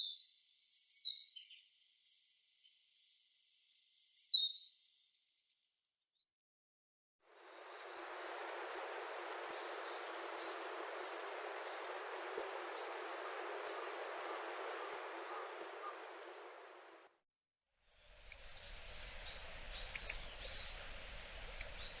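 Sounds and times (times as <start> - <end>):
bird high sharp calls: 7.4 - 17.0
steady background hiss: 7.4 - 17.0, 18.0 - 22.0.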